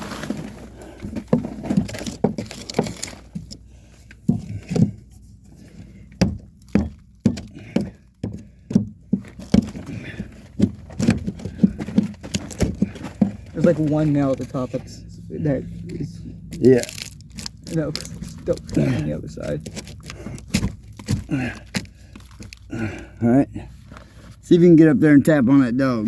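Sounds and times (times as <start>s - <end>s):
hammer knocking on wood: 6.2s - 9.8s.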